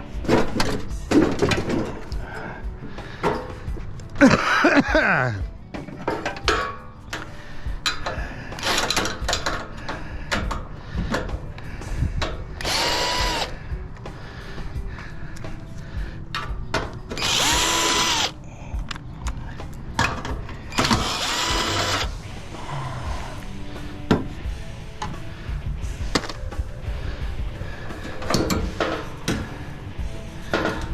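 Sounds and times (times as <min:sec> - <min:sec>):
power drill whining: 0:08.6 - 0:09.0, 0:12.6 - 0:13.6, 0:17.2 - 0:18.4, 0:20.8 - 0:22.2, 0:26.2 - 0:26.4.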